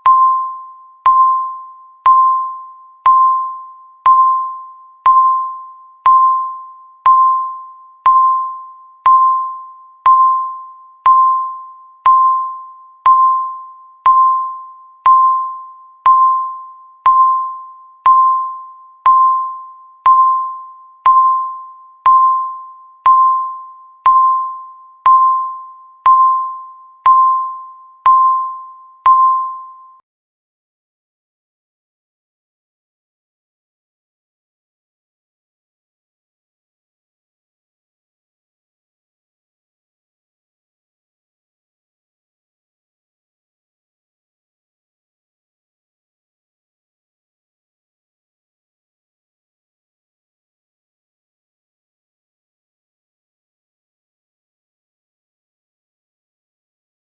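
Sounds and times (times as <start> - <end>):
timer beeping: 0.0 - 30.0.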